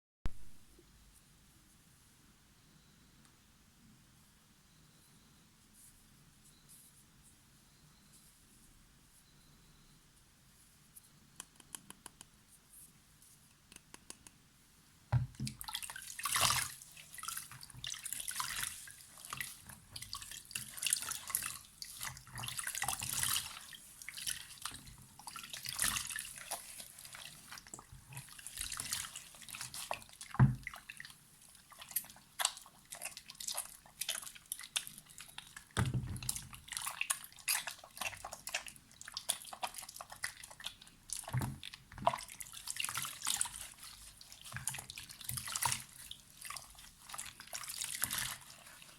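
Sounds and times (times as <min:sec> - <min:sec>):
soft thumps: 0:15.1 - 0:15.6
soap lathering with water: 0:15.4 - 0:48.9.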